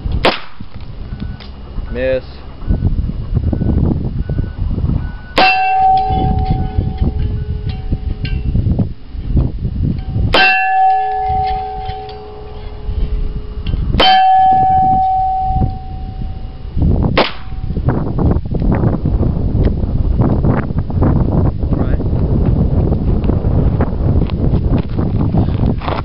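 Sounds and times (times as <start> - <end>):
steel plate target ringing: 5.3 - 8.8, 9.9 - 16.6, 17.2 - 17.9.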